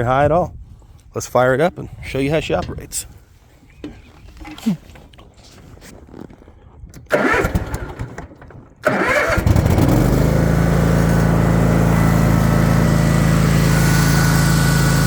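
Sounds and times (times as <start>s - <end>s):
electric starter cranking: 7.0s - 15.0s
mower engine running: 7.1s - 8.1s, 8.8s - 15.0s.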